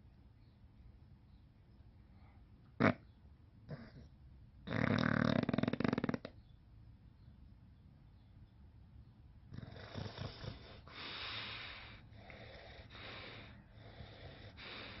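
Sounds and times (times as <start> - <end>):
dog snoring: 3.7 - 6.3, 9.5 - 15.0.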